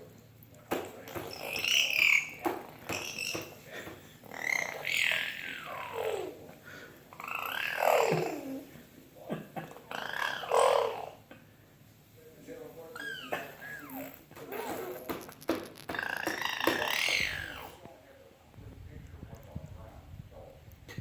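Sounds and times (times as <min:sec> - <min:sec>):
child making fart noises: 0:07.2 - 0:08.6, 0:09.9 - 0:11.2, 0:13.0 - 0:17.8.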